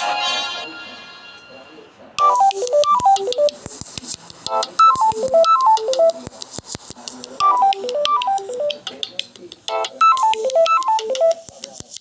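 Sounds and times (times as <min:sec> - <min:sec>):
synthesized ringtone melody: 0:00.0 - 0:03.7, 0:04.5 - 0:06.3, 0:07.4 - 0:09.0, 0:09.7 - 0:11.5
clicking beat: 0:02.2 - 0:12.0.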